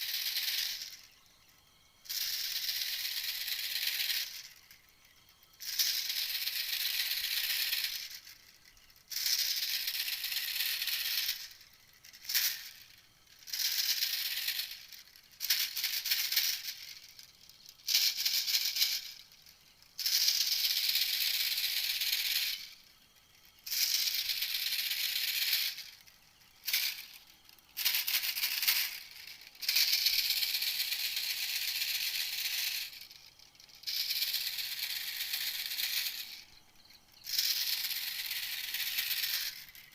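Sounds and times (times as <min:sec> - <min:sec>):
bird rattling chatter: 0:00.0 - 0:01.2, 0:02.0 - 0:39.9.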